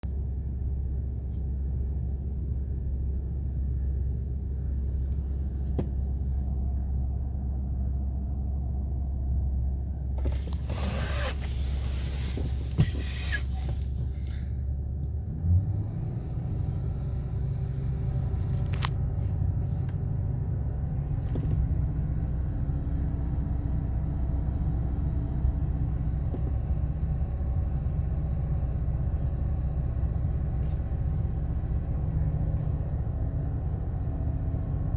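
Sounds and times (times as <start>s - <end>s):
engine idling with misfire: 0.0s - 34.9s
rustling hiss: 10.2s - 14.0s.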